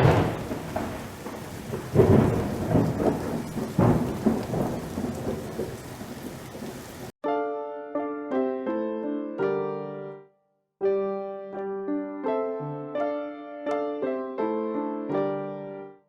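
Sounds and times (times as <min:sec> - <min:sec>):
piano music: 0:00.0 - 0:01.4, 0:07.2 - 0:16.0
loud thunder peals: 0:00.0 - 0:07.1
steady rain: 0:00.0 - 0:07.2.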